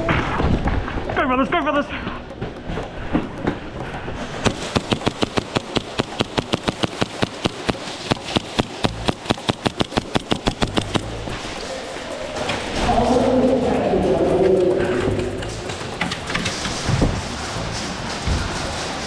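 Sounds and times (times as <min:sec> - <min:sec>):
airsoft gun shots: 0:04.4 - 0:11.1.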